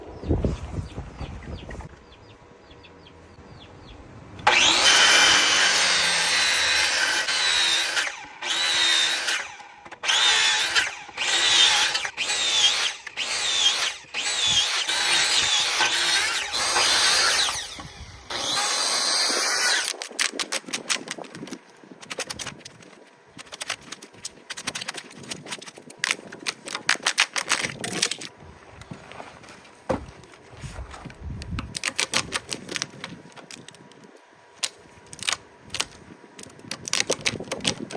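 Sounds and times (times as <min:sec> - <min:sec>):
power tool cutting wood: 0:04.4 - 0:20.0.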